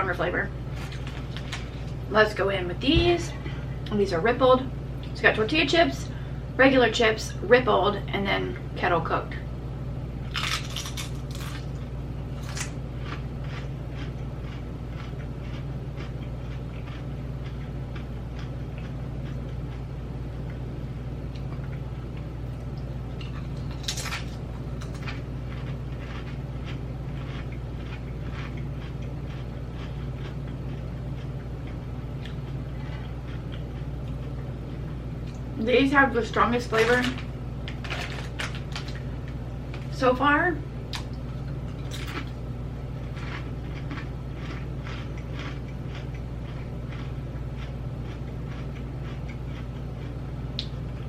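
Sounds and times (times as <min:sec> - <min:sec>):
potato chips crunching: 0:00.7 - 0:02.1, 0:10.3 - 0:19.8, 0:23.2 - 0:34.3, 0:36.4 - 0:40.0, 0:40.9 - 0:42.4, 0:43.0 - 0:50.7.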